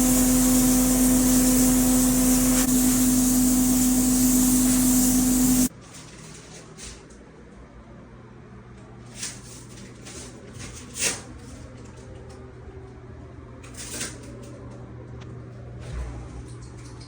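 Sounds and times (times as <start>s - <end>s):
short hissing noises: 0.0s - 5.7s
steady low hum: 0.0s - 5.7s.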